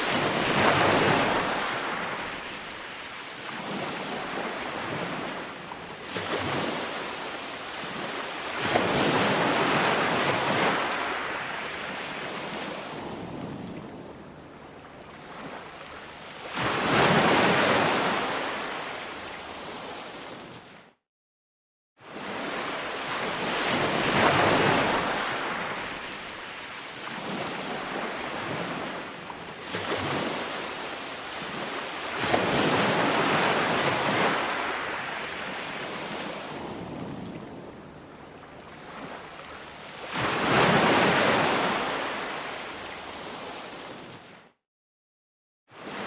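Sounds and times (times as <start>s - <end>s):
ocean waves breaking: 0.0s - 20.8s, 22.0s - 44.5s.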